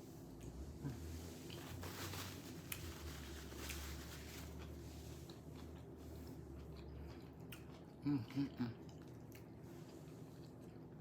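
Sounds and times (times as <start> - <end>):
low steady hum: 0.0 - 11.0
person chewing food: 4.5 - 11.0.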